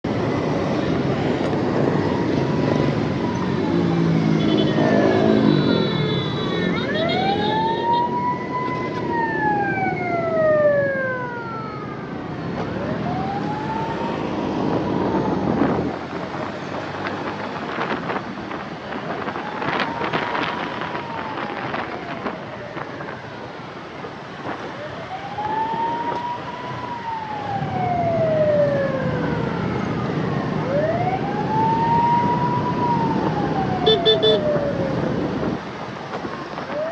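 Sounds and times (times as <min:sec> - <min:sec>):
road traffic noise: 0:00.0 - 0:36.9
ambulance siren wailing: 0:00.3 - 0:36.9
vehicle horn: 0:04.4 - 0:06.9.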